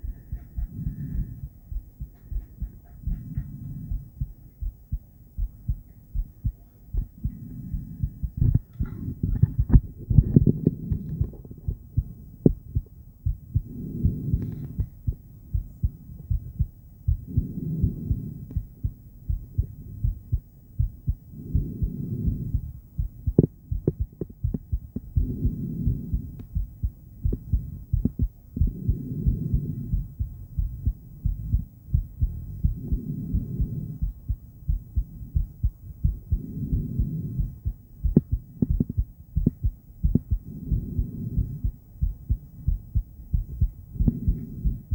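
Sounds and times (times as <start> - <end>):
heartbeat thumps: 0.0 - 44.9.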